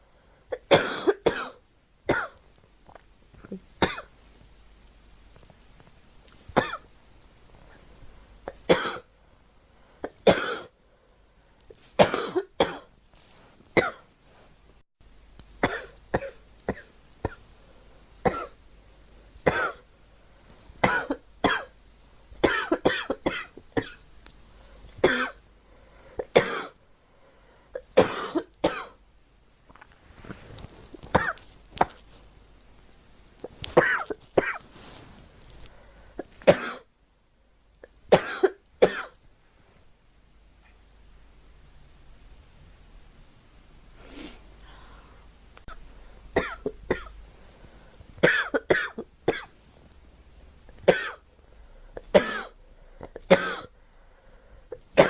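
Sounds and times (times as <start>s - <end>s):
girl coughing: 0.5s - 2.4s, 3.5s - 4.1s, 6.6s - 6.8s, 8.5s - 9.1s, 10.1s - 10.7s, 12.0s - 12.9s, 15.6s - 16.9s, 18.2s - 18.6s, 19.5s - 19.8s, 20.8s - 21.7s, 22.4s - 24.0s, 25.0s - 25.4s, 26.2s - 26.8s, 27.8s - 29.0s, 31.1s - 32.0s, 33.8s - 34.6s, 36.2s - 36.9s, 38.1s - 39.1s, 46.4s - 47.1s, 48.2s - 49.5s, 50.9s - 51.2s, 52.1s - 53.7s.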